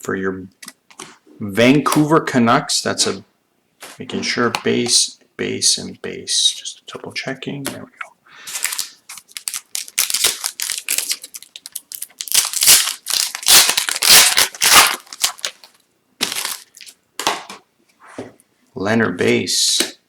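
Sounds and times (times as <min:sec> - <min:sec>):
wrapper tearing and crinkling: 0:08.5 - 0:17.0.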